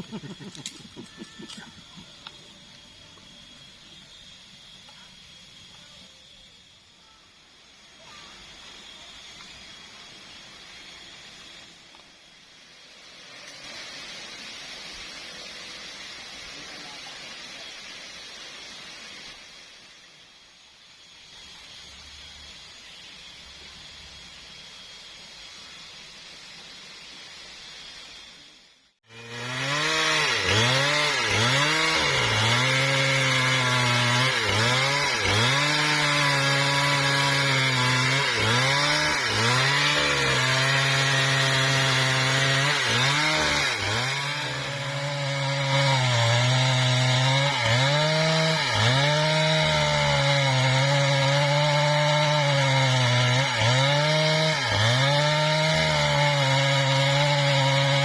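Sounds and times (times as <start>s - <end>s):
chainsaw cutting wood: 0.0s - 3.4s, 12.8s - 19.6s, 29.0s - 58.0s.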